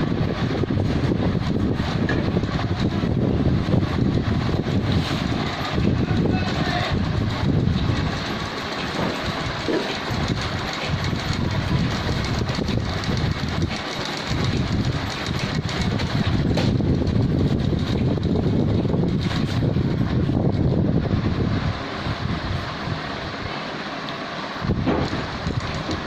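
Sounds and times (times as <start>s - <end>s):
sewing machine running: 0.0s - 20.1s.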